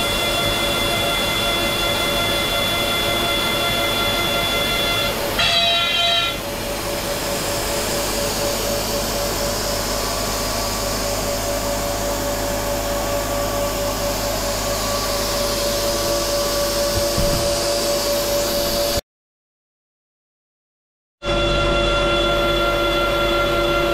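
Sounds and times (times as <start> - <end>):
spindle whine: 0.0 - 19.0.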